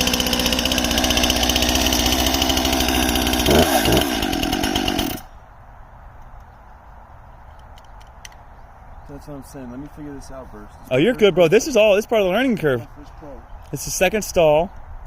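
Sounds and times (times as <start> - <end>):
chainsaw engine running: 0.0 - 5.3.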